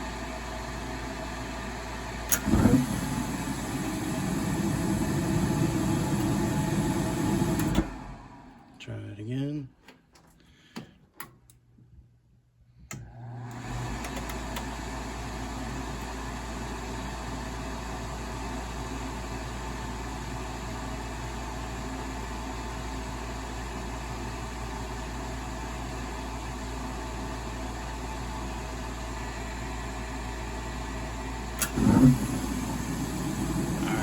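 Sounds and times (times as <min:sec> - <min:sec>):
fan motor humming: 0:00.0 - 0:08.7, 0:28.7 - 0:34.0.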